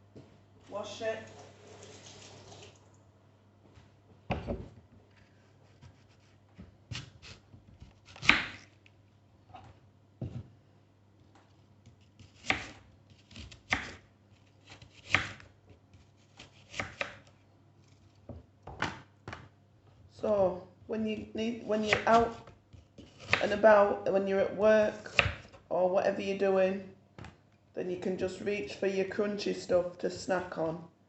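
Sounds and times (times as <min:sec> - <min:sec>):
knife chopping on board: 0:06.9 - 0:08.7, 0:12.2 - 0:14.0, 0:14.6 - 0:15.4, 0:16.3 - 0:17.3, 0:25.1 - 0:25.6.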